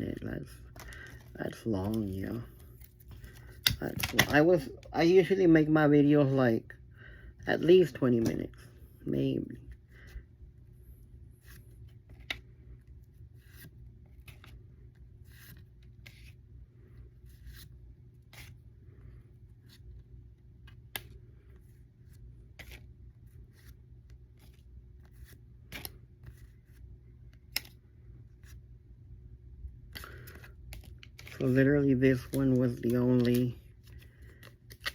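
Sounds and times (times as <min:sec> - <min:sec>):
cards flipping and sliding: 0:00.0 - 0:04.8, 0:07.8 - 0:08.5, 0:11.3 - 0:28.7, 0:29.8 - 0:34.9
faint low hum: 0:00.0 - 0:34.9.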